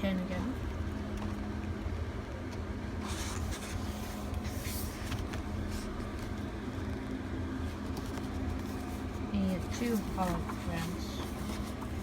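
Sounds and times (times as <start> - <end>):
low background hum: 0.0 - 12.0
paper inserts rustling: 7.7 - 12.0.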